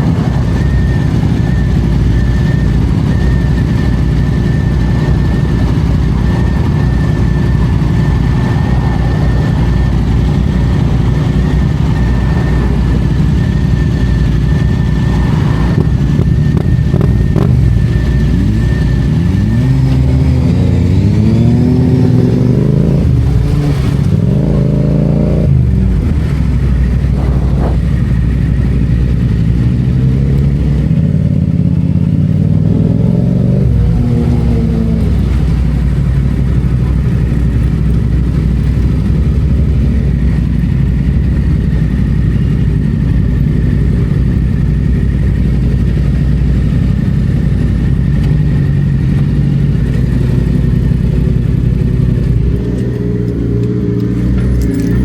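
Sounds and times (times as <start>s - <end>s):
motorcycle engine pulling: 47.8s - 55.0s.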